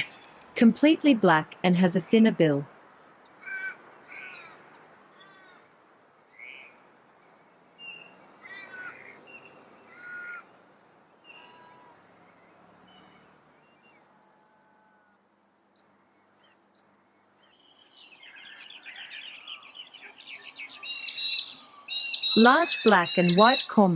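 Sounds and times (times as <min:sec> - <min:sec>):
short falling bird calls: 0:07.8 - 0:10.5, 0:17.6 - 0:22.4.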